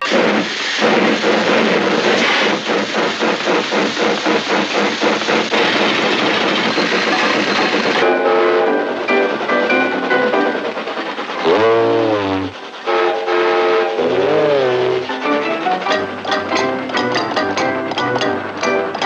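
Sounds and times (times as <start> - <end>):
steam train chuffing: 0.0 - 19.0
train whistle: 8.0 - 10.6, 11.4 - 16.2.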